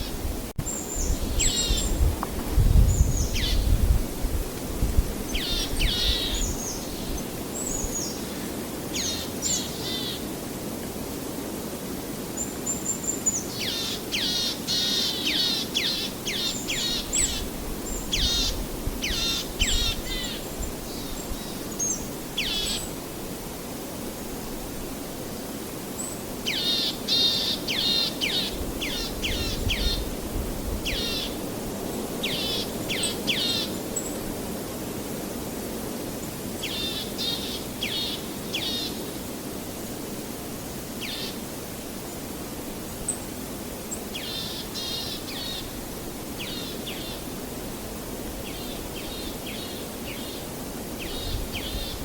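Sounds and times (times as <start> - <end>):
songbird calling: 0.0 - 2.1, 2.8 - 3.8, 5.3 - 10.3, 12.4 - 23.0, 26.0 - 30.2, 30.8 - 31.4, 32.0 - 34.2, 36.6 - 39.2, 41.0 - 41.4, 42.9 - 47.5, 48.4 - 52.0
steady noisy wash: 0.0 - 52.0
bird calling: 5.3 - 10.2, 13.3 - 22.9, 26.5 - 30.2.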